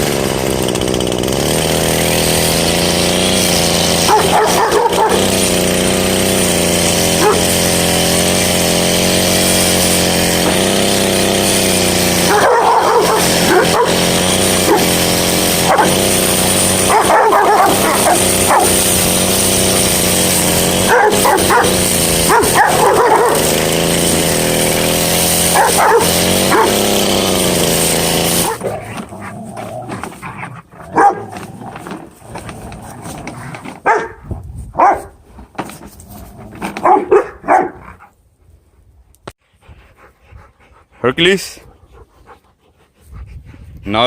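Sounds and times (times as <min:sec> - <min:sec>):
small petrol engine running: 0:00.0 - 0:37.7
dog barking: 0:04.0 - 0:05.3, 0:07.2 - 0:07.6, 0:12.2 - 0:15.0, 0:15.6 - 0:16.2, 0:16.8 - 0:18.9, 0:20.8 - 0:23.5, 0:25.5 - 0:26.8, 0:30.8 - 0:31.4, 0:33.8 - 0:34.2, 0:34.8 - 0:35.2, 0:36.8 - 0:38.0.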